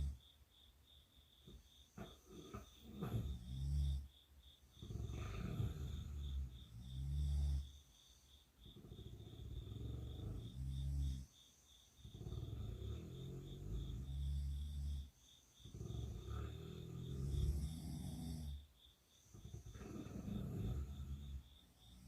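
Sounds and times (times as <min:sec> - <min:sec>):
girl snoring: 0:00.0 - 0:00.2, 0:01.5 - 0:04.1, 0:04.8 - 0:07.8, 0:08.7 - 0:11.3, 0:12.0 - 0:18.7, 0:19.3 - 0:22.0
quiet breaths: 0:00.0 - 0:22.0.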